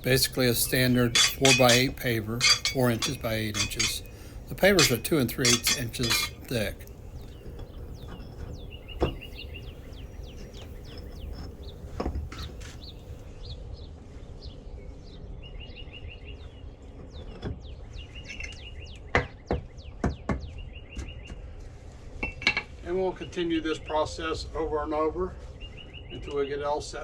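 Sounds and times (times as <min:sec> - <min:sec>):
songbirds chirping: 0:00.0 - 0:13.2
low steady background noise: 0:00.0 - 0:15.5.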